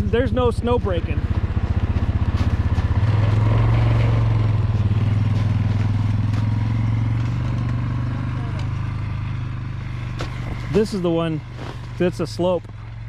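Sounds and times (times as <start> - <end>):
quad bike engine under load: 0.0 - 13.0.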